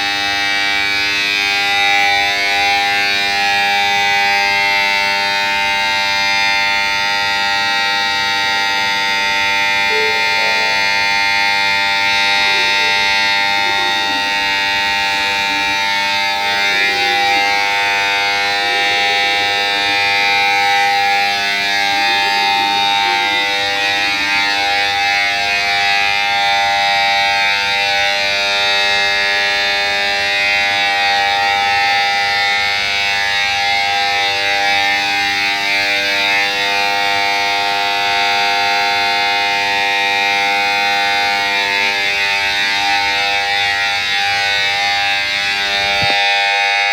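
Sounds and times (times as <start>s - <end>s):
loud emergency alarm bell: 0.0s - 46.9s.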